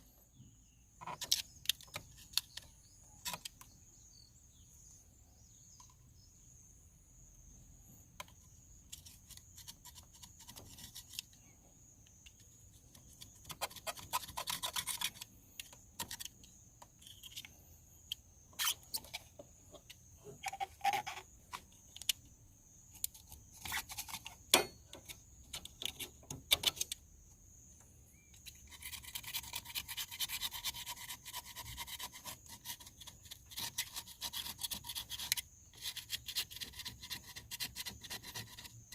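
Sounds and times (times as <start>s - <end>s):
small tools clicking and knocking: 1.0s - 3.7s, 22.9s - 27.0s.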